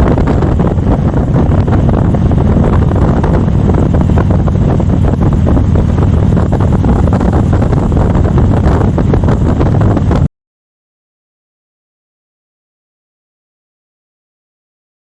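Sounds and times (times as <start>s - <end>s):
low rumble: 0.0s - 10.3s
wind buffeting microphone: 0.0s - 10.3s.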